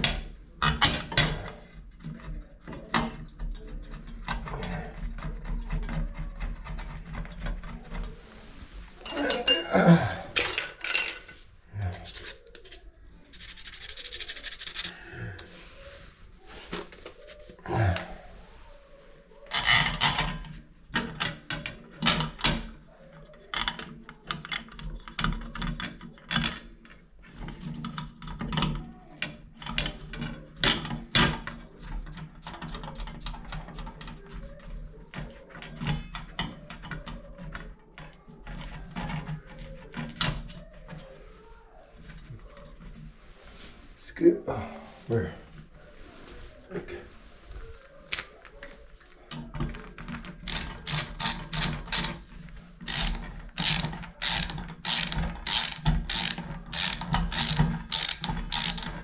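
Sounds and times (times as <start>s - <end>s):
rubbing and scraping on metal parts: 10.3s - 17.6s, 49.8s - 59.0s.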